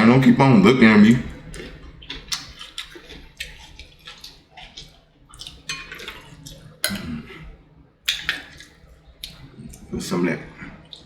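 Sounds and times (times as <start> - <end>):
wet chewing and lip-smacking: 1.1 - 7.0, 8.1 - 9.9.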